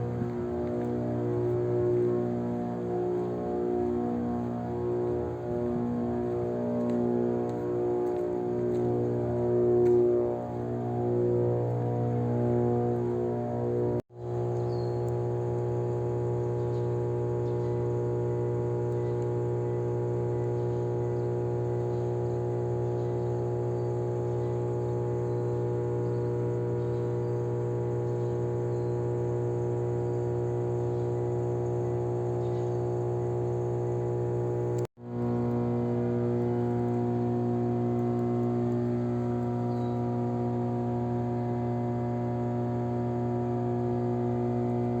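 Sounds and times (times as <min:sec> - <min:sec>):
transformer humming: 0:00.0 - 0:45.0.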